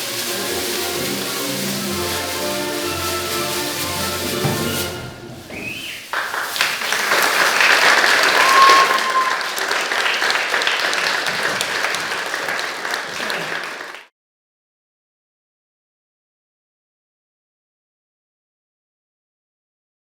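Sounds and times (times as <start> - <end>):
music: 0.0 - 6.2
audience applauding: 0.0 - 14.1.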